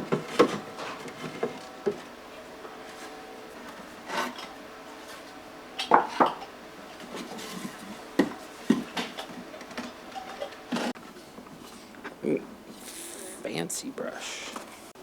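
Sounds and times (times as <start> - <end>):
hard objects knocking and clattering: 0.0 - 2.1, 5.8 - 11.6
light rubbing and scraping: 7.0 - 11.0.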